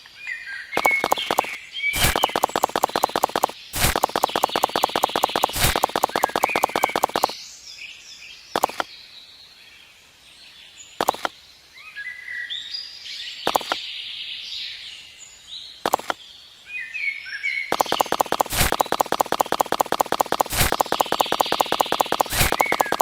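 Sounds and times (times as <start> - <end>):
small birds chirping: 0.2 - 23.0
rapid even ticking: 0.8 - 7.4, 8.6 - 8.8, 11.0 - 11.3, 13.5 - 13.8, 15.9 - 16.2, 17.7 - 23.0
sharp single clicks: 0.8 - 7.4, 8.6 - 8.9, 11.0 - 11.4, 13.5 - 13.8, 15.8 - 16.2, 17.7 - 23.0.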